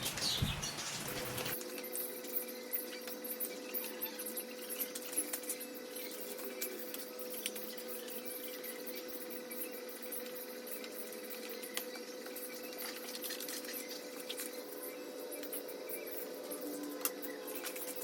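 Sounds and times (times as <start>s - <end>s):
budgerigars chirping: 0.0s - 1.6s
steady hum: 0.0s - 1.6s.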